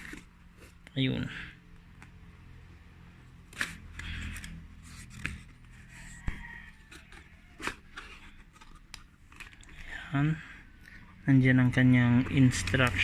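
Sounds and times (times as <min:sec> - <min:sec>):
packaging rustling and scraping: 0:00.0 - 0:00.8, 0:03.5 - 0:09.9, 0:12.1 - 0:13.0.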